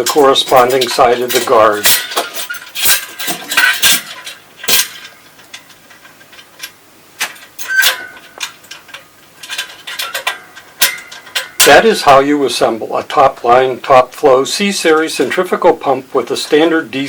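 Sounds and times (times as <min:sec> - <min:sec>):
metallic clinks and taps: 0:00.0 - 0:11.7.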